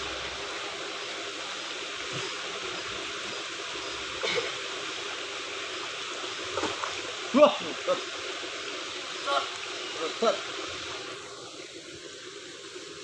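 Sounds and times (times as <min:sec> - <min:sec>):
running water rushing: 0:00.0 - 0:13.0.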